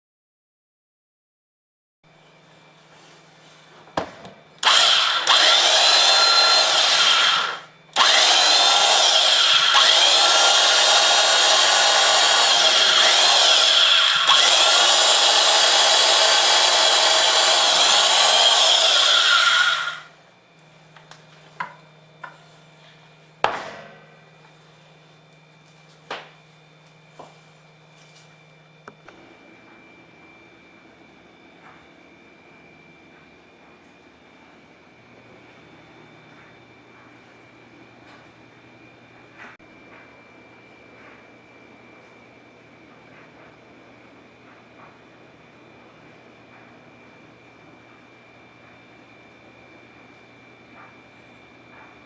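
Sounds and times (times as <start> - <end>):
electric drill boring into wood: 4.6 - 20.1.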